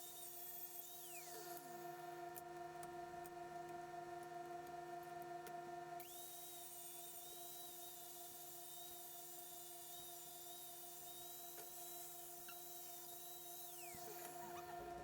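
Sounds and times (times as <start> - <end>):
small motor whine: 0.0 - 2.1, 6.0 - 15.0.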